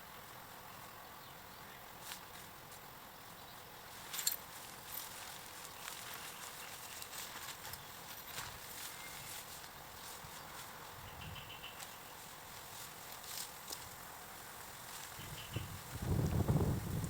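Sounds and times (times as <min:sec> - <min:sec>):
outdoor background hiss: 0:00.0 - 0:17.0.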